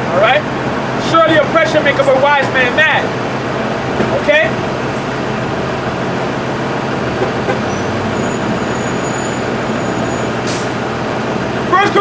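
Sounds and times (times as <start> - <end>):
vehicle hum with hiss: 0.0 - 12.0.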